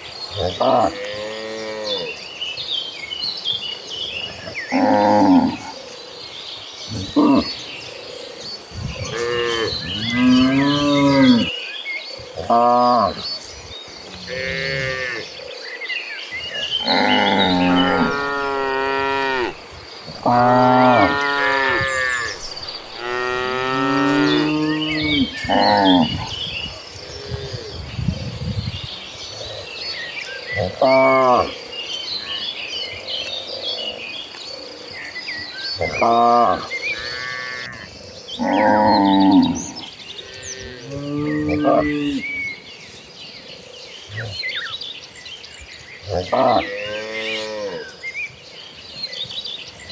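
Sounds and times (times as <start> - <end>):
cattle mooing: 16.8 - 26.2.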